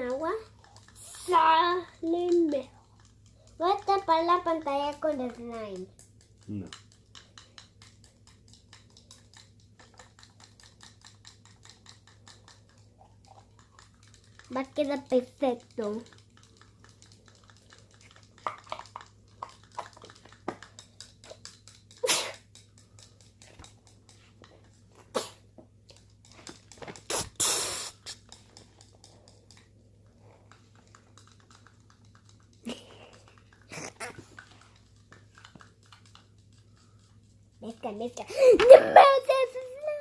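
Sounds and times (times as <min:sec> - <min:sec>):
slime squishing and clicking: 0:00.0 - 0:24.8
slime squelches: 0:23.2 - 0:40.0.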